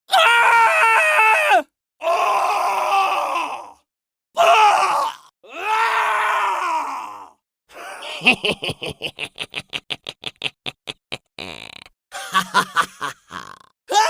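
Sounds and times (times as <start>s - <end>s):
man screaming in agony: 0.1s - 3.8s, 4.4s - 8.1s, 12.4s - 14.0s
man laughing evilly: 7.7s - 13.7s.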